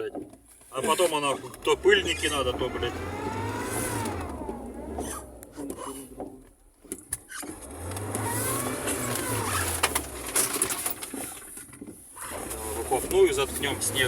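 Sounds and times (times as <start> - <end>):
sharp knocks and clicks: 0.0 - 1.7, 4.0 - 12.0
car engine running and revving: 0.8 - 14.0.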